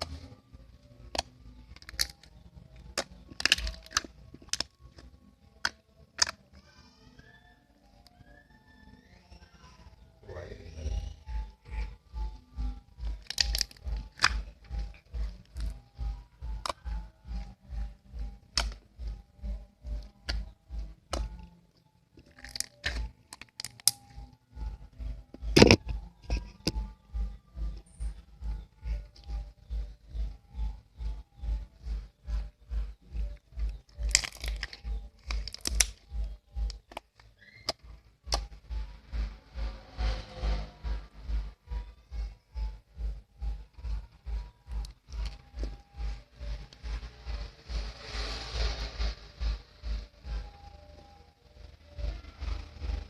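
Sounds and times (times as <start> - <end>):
background music with steady beat: 0.0 - 53.0
slime crackling and popping: 1.1 - 5.0, 13.0 - 15.8, 18.5 - 18.8, 22.2 - 24.2, 33.6 - 37.7.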